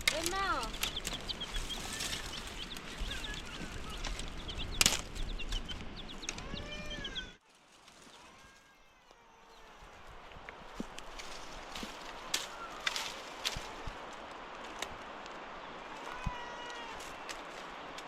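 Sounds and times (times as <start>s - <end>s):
chickens clucking and cheeping: 0.7s - 7.4s.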